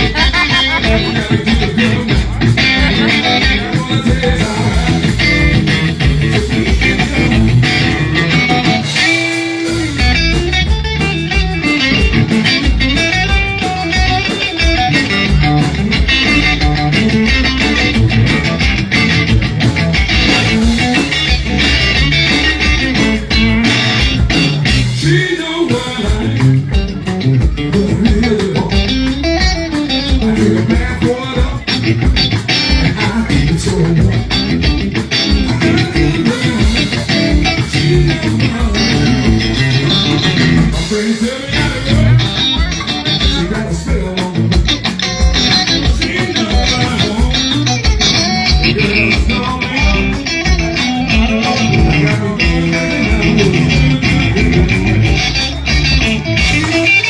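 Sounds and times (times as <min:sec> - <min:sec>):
electric guitar: 0:00.0 - 0:57.0
live blues band playing: 0:00.0 - 0:57.0.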